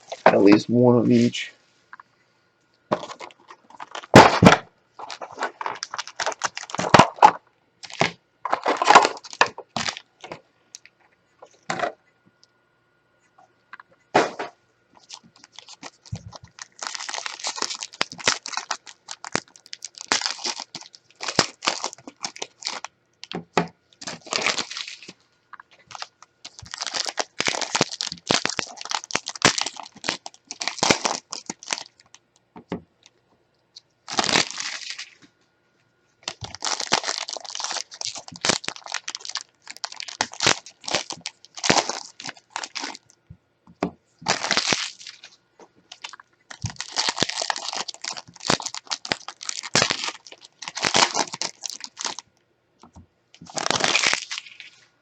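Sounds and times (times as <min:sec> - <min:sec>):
plastic wrap crackling and tearing: 0:00.0 - 0:00.6, 0:02.9 - 0:10.8, 0:15.0 - 0:32.2, 0:34.1 - 0:35.2, 0:36.2 - 0:43.2, 0:44.2 - 0:52.3, 0:52.9 - 0:54.8.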